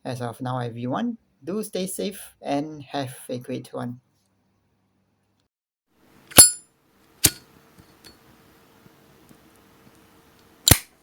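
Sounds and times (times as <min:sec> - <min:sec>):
lighter lid clicking: 0:10.7 - 0:10.9.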